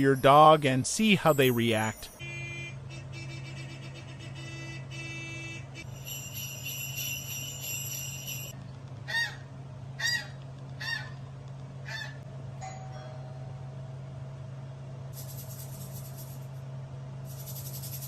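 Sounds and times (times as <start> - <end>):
small bells jingling: 0.0 - 2.2, 5.8 - 8.6, 15.2 - 16.6, 17.3 - 18.0.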